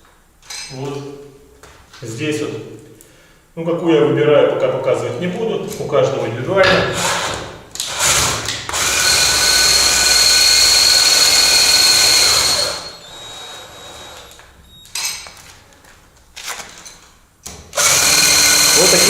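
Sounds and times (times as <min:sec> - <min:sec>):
cordless drill whining: 0:07.0 - 0:14.8, 0:17.8 - 0:19.0.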